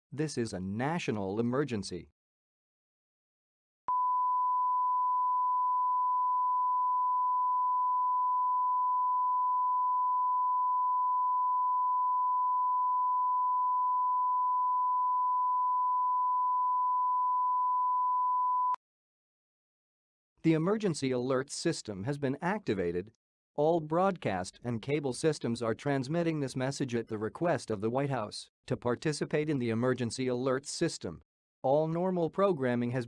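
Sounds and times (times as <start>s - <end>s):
steady electronic sine tone: 3.9s - 18.8s.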